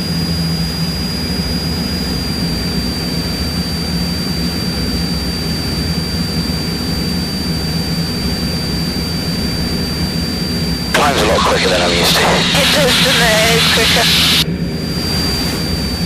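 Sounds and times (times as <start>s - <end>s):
high-pitched whine: 11.0s - 14.4s.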